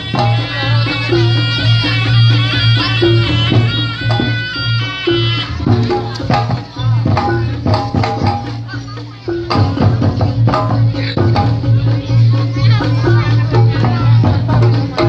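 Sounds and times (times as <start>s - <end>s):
shrill reed pipe melody: 0.0s - 6.3s
hand drums: 0.0s - 15.0s.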